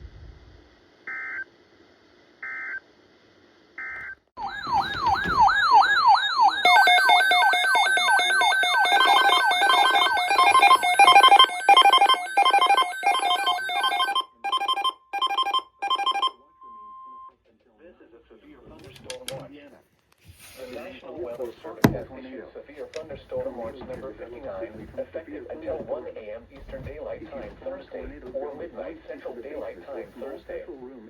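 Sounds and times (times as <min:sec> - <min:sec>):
pulsing electronic alarm tones: 0:03.8 - 0:16.3
electronic alert siren sweeping: 0:04.4 - 0:16.3.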